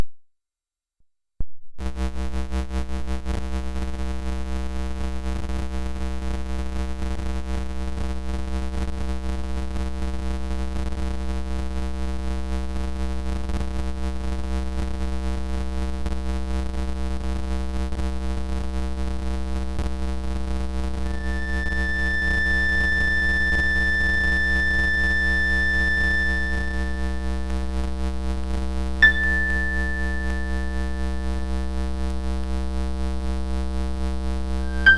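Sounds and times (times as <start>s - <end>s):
strong low hum: 21.1s - 27.7s, 29.0s - 32.0s
synthetic electronic drone: 21.1s - 27.7s
high whistle-like tone: 21.1s - 27.9s, 29.0s - 32.1s, 34.6s - 34.9s.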